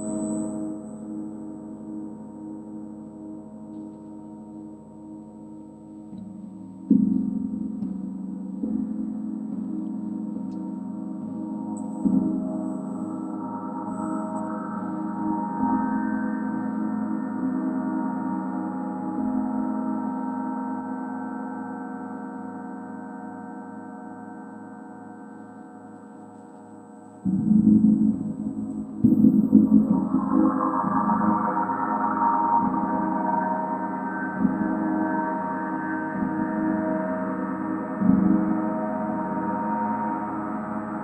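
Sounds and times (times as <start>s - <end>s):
slow pulsing beat: 27.3s - 35.4s.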